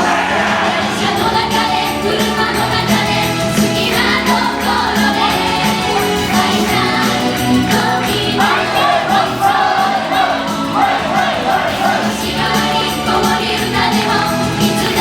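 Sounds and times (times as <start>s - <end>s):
pop song with group vocals: 0.0s - 15.0s.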